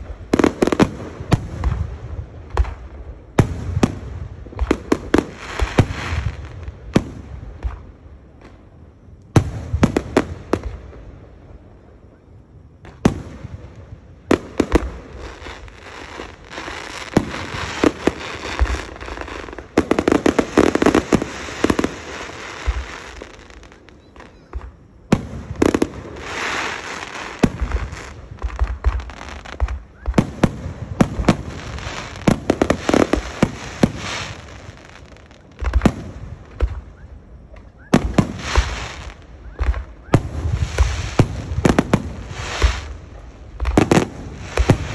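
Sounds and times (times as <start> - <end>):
fireworks bangs and crackling: 0.0 - 44.9.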